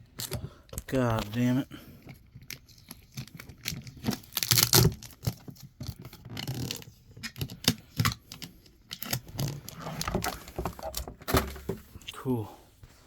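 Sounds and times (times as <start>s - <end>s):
packaging clicks and scratches: 0.0s - 11.1s
packaging tearing: 2.4s - 6.9s.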